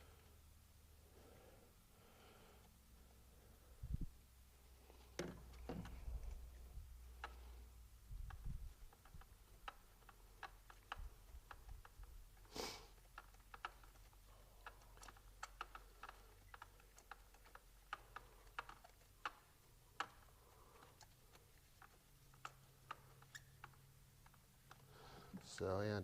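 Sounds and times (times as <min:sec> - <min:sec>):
hand tools clicking and tapping: 0:08.2 - 0:26.0.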